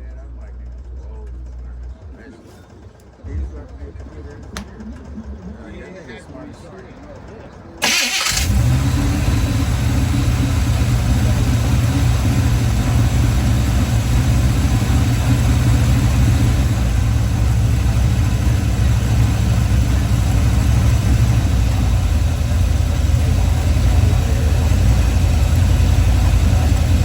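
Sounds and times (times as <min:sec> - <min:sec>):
car engine running steadily: 0:07.8 - 0:27.0.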